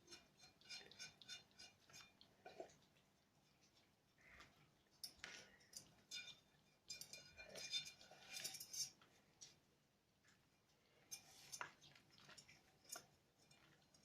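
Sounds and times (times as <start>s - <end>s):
dishes and cutlery clinking: 0.0s - 2.7s, 5.0s - 9.0s.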